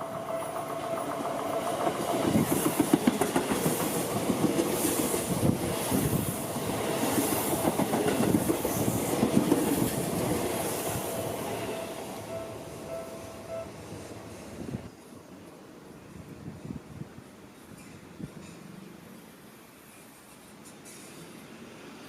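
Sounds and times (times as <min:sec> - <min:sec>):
level crossing warning bell: 0:00.0 - 0:01.5, 0:11.6 - 0:14.0
train wheels clattering over rails: 0:00.0 - 0:11.7.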